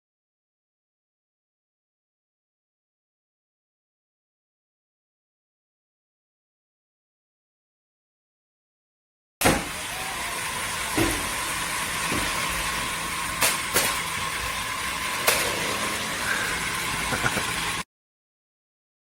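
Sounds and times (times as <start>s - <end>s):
wheels hissing on ground: 9.5s - 17.8s
toy car motors whirring: 9.7s - 17.8s.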